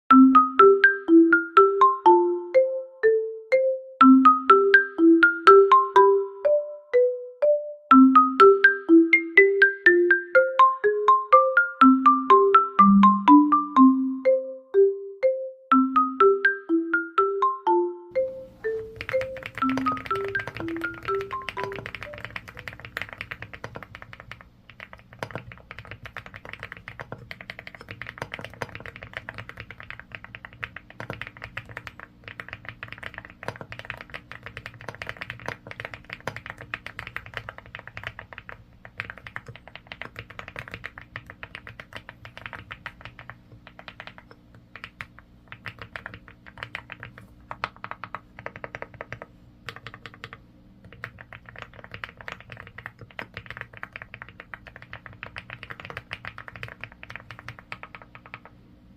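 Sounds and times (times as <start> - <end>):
soft background music: 0.1 - 22.7.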